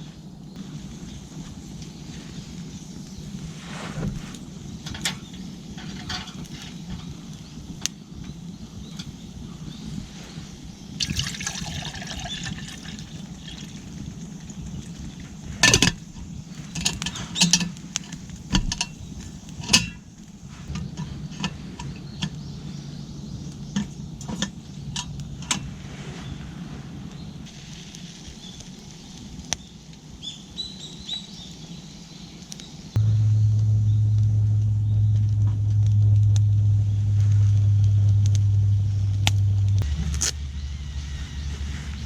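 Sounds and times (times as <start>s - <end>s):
liquid sloshing in cookware: 11.0s - 16.2s
metal pots and cups clinking: 11.0s - 20.0s.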